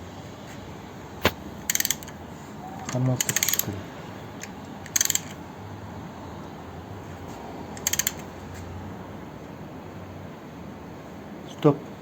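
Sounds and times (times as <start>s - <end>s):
ratchet wrench clicking: 1.6s - 2.2s, 2.8s - 3.8s, 4.4s - 5.4s, 7.8s - 8.4s.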